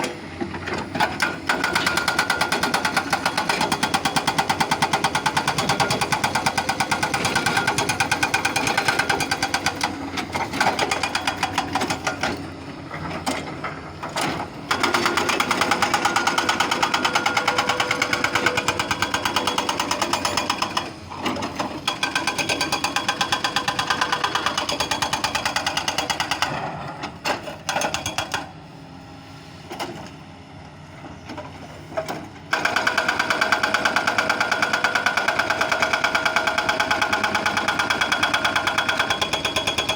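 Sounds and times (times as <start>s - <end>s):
excavator diesel engine clattering: 0.0s - 28.6s.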